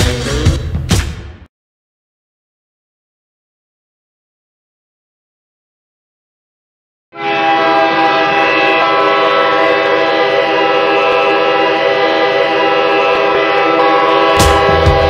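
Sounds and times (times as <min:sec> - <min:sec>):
goal horn chord: 0:07.2 - 0:15.0.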